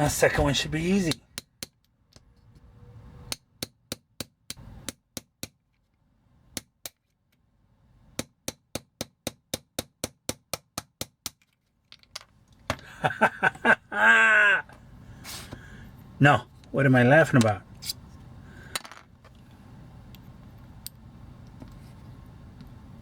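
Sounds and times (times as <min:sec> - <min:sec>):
small hammer tapping a punch: 0:03.3 - 0:05.6, 0:08.2 - 0:11.4.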